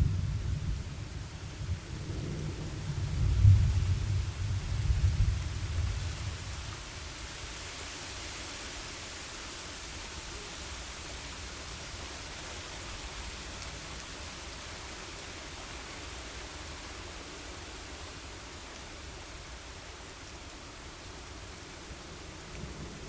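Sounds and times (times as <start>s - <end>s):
thunderclap rumble: 0.0s - 6.6s
steady rain hissing: 0.0s - 23.0s.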